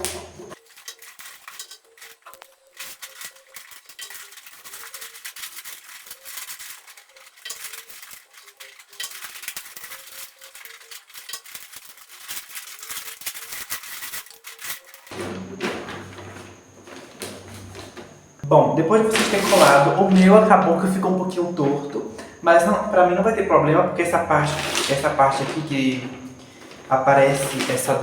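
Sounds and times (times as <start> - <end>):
paper crinkling and rustling: 0.0 - 28.0.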